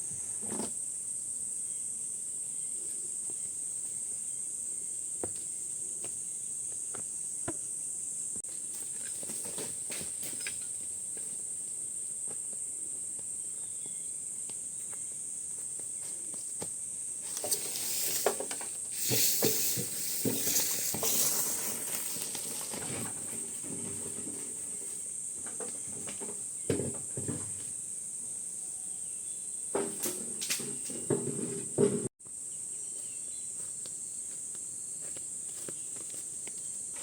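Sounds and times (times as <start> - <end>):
insects buzzing: 0.0 - 37.0
rustling and knocking: 15.8 - 27.7.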